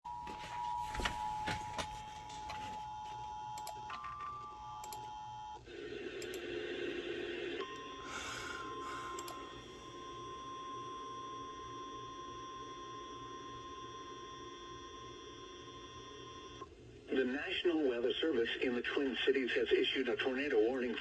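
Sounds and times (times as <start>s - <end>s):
two-tone alarm: 0.1s - 5.6s, 7.6s - 16.6s.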